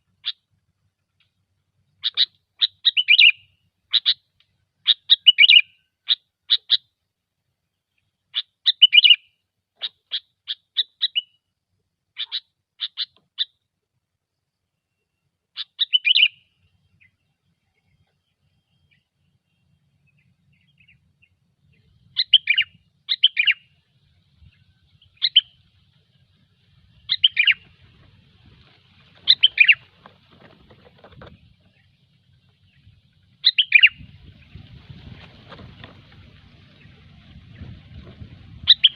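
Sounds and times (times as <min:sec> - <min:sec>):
bulbul chattering song: 0:02.0 - 0:04.2, 0:04.8 - 0:06.9, 0:08.3 - 0:11.4, 0:12.2 - 0:13.6, 0:15.6 - 0:17.2, 0:20.1 - 0:23.8, 0:24.4 - 0:25.9, 0:26.9 - 0:28.3, 0:29.2 - 0:34.8, 0:36.1 - 0:38.9.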